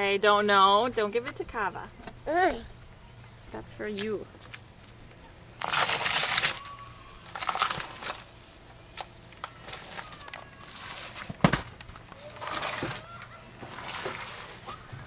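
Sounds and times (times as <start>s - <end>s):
crinkling handling noise: 4.4s - 15.0s.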